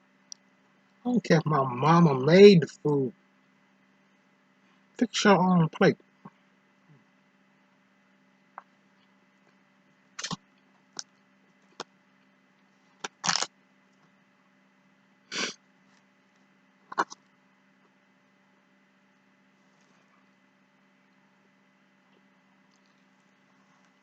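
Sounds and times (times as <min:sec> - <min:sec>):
low electrical hum: 0:00.0 - 0:24.0
person eating: 0:13.0 - 0:13.5, 0:16.9 - 0:17.2.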